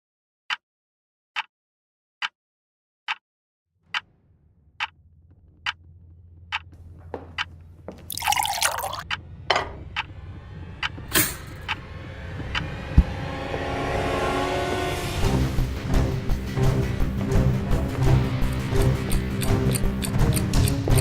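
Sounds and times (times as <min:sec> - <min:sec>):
low rumble: 0:04.0 - 0:08.0
water splashing: 0:08.1 - 0:09.0
water dripping: 0:08.1 - 0:09.1
knocks: 0:09.5 - 0:09.9.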